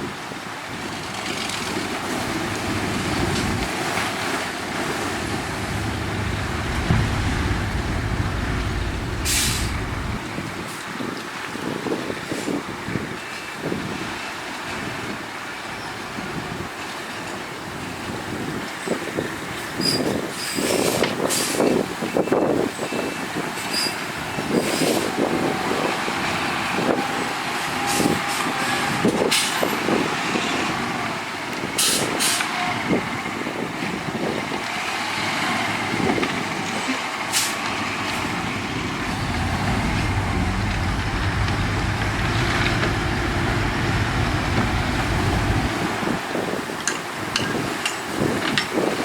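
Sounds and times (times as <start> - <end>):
dump truck engine running: 4.6 - 10.5, 37.6 - 46.3
knocks: 5.3 - 10.2
short sharp hisses: 9.2 - 9.8.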